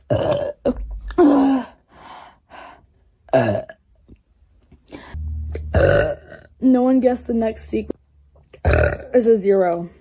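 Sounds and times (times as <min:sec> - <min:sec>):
woman burping loudly: 0:00.0 - 0:01.7, 0:03.3 - 0:03.8, 0:05.5 - 0:06.6, 0:08.6 - 0:09.2.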